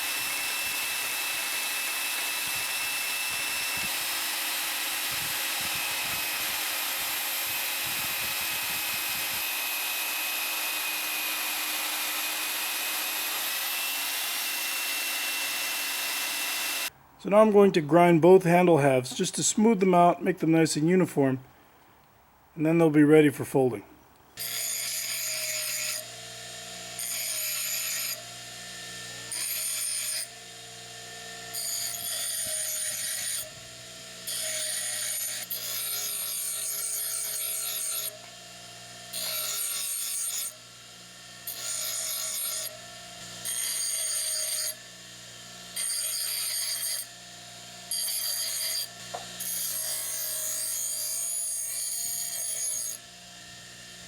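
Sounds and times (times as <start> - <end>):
grinder grinding steel: 0.0 - 16.9, 24.4 - 54.0
grinder motor humming: 0.0 - 16.9.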